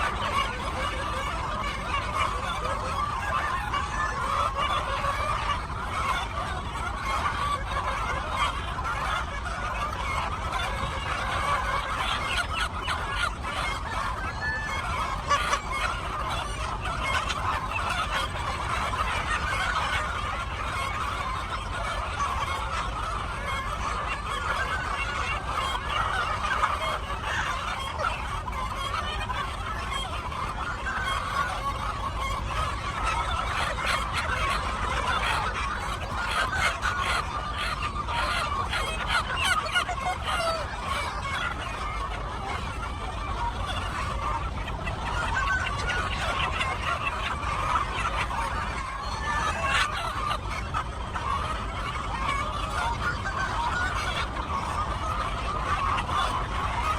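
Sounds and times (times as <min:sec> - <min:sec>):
chickens clucking: 0:00.0 - 0:56.9.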